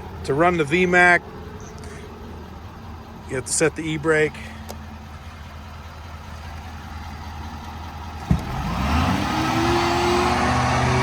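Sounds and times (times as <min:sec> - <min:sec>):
diesel engine idling and revving: 0:00.0 - 0:11.0.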